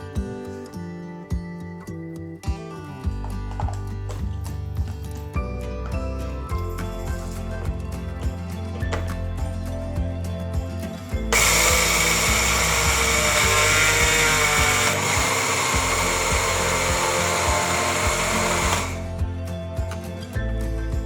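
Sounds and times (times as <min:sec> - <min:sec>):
electric blender whining: 0:11.3 - 0:19.2.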